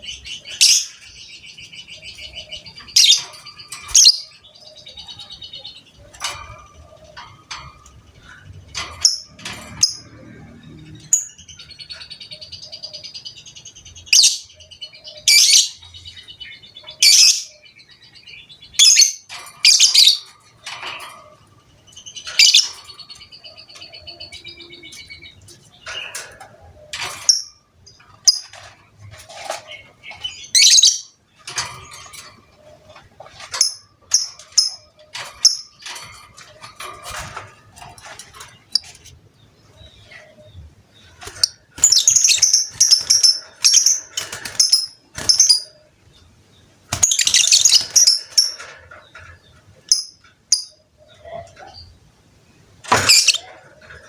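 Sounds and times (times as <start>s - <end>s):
lovebird chattering and shrieking: 52.9s - 53.5s.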